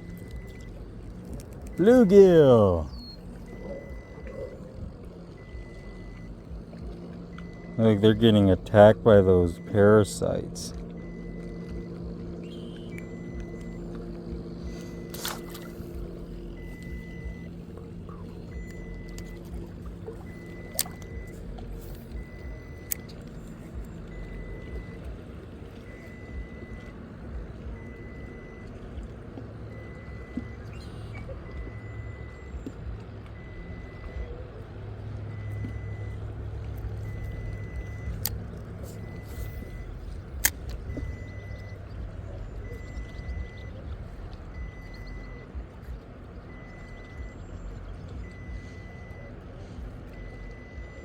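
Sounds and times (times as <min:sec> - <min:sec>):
high electronic beep: 0:00.0 - 0:23.1, 0:36.9 - 0:38.3, 0:38.9 - 0:49.3
boat motor rumbling: 0:00.0 - 0:51.0
sharp clicks: 0:09.6 - 0:25.2, 0:35.3 - 0:49.2.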